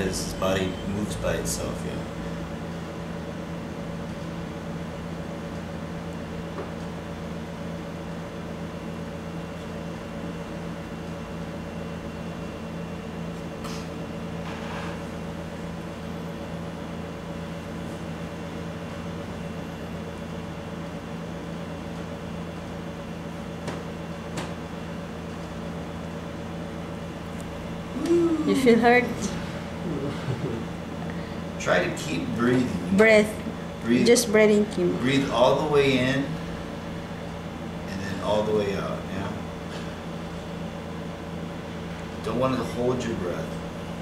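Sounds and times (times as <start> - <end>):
steady mechanical hum: 0.0 - 44.0.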